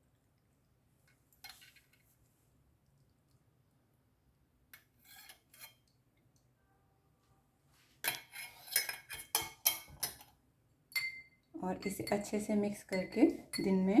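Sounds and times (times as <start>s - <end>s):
spoon clinking in a cup: 8.1s - 10.3s, 10.9s - 14.0s.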